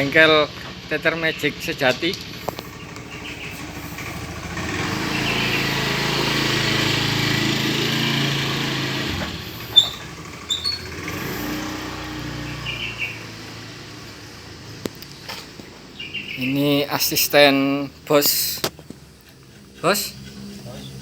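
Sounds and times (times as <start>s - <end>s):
small engine running: 2.4s - 15.1s, 18.2s - 21.0s.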